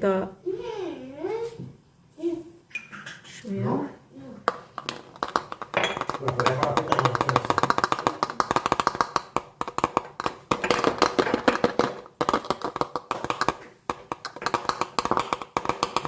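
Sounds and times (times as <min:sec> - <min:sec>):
metal spoon tapping glass bottles: 0:04.5 - 0:16.0.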